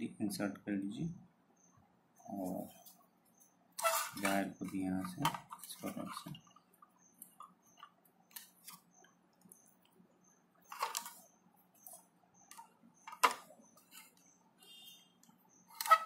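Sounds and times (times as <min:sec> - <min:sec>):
short scrape: 0:03.8 - 0:04.3.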